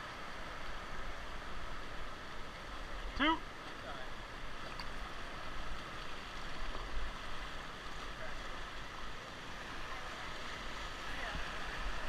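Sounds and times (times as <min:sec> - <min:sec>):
whitewater river rushing: 0:00.0 - 0:12.0.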